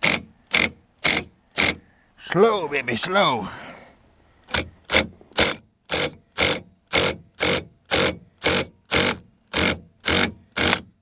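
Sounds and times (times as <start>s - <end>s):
hand ratchet ratcheting: 0.0s - 1.8s, 4.5s - 11.0s.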